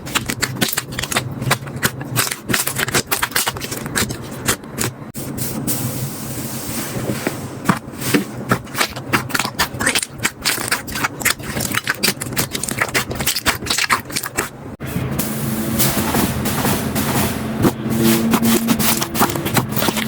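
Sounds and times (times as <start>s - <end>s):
slime crackling and popping: 0.0s - 4.9s, 8.6s - 14.5s.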